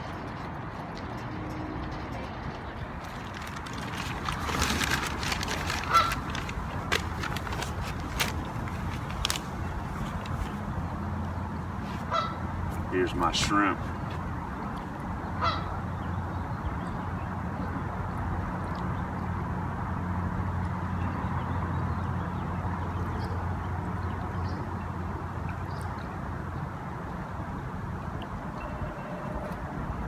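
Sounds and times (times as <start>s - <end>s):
steady rushing background noise: 0.0s - 14.6s
geese honking: 5.8s - 6.3s, 12.1s - 12.4s.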